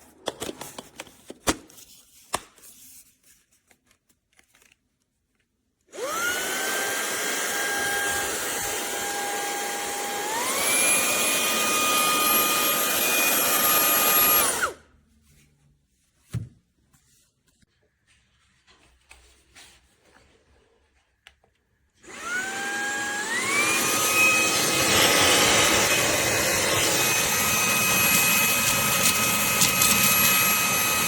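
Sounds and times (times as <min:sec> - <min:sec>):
handheld vacuum whining: 0:05.9 - 0:14.9, 0:22.0 - 0:31.0.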